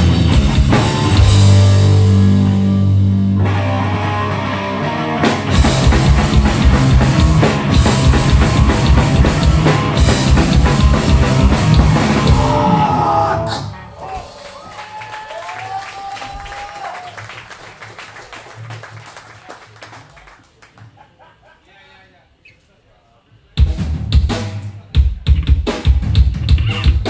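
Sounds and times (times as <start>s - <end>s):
hardcore band playing live: 0.0s - 14.4s, 23.6s - 27.0s.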